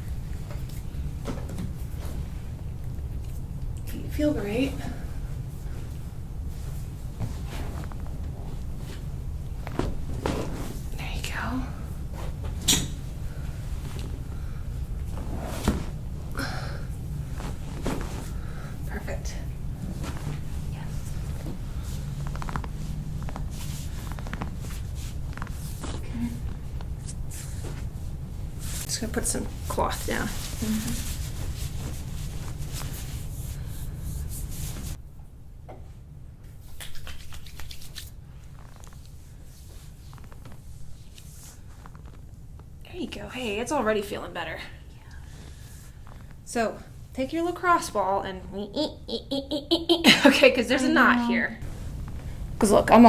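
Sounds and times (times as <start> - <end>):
cloth rustling: 5.3 - 11.0, 11.7 - 35.0.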